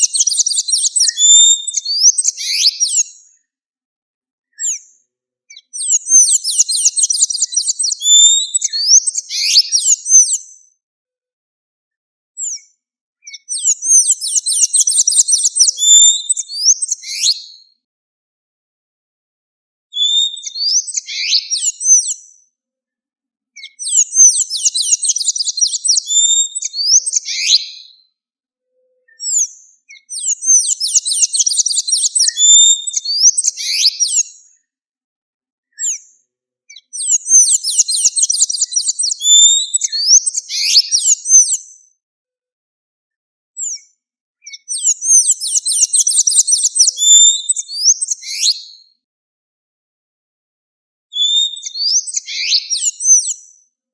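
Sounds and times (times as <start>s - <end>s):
bird twittering song: 0.0s - 3.5s, 4.5s - 10.5s, 12.4s - 17.7s, 20.0s - 22.5s, 23.6s - 28.0s, 28.8s - 34.6s, 35.7s - 41.7s, 43.6s - 48.9s, 51.2s - 53.7s.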